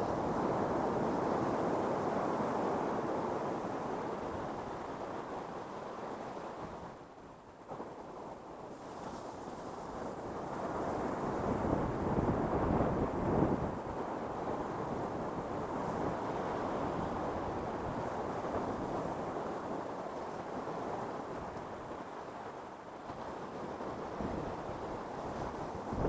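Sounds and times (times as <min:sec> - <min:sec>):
wind buffeting microphone: 0:23.1 - 0:26.0.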